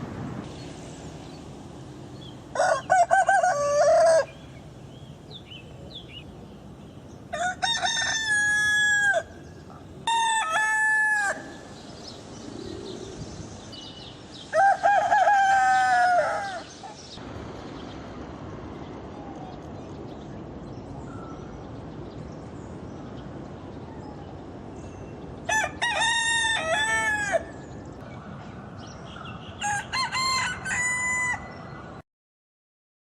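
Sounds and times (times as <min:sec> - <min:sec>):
rooster crowing: 0:02.5 - 0:04.4, 0:07.3 - 0:09.4, 0:10.0 - 0:11.7, 0:14.5 - 0:16.9, 0:25.5 - 0:27.6, 0:29.6 - 0:31.7.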